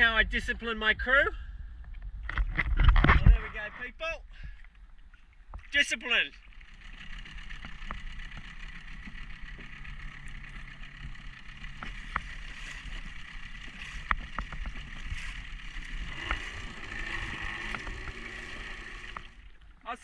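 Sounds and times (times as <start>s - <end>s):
water lapping around boat: 4.3s - 19.9s.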